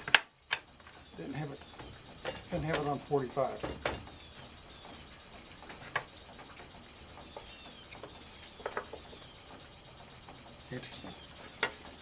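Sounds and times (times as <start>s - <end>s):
wood knocks and clicks: 3.6s - 4.2s.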